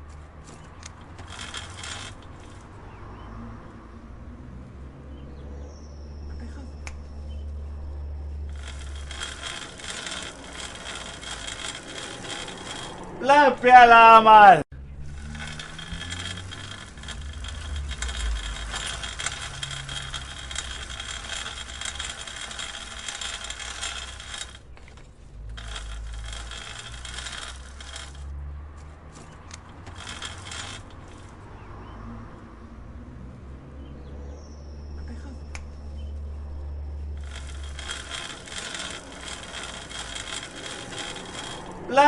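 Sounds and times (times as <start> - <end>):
bicycle chain clicking and rattling: 0.0 - 3.1, 8.3 - 13.9, 14.9 - 31.7, 37.0 - 42.0.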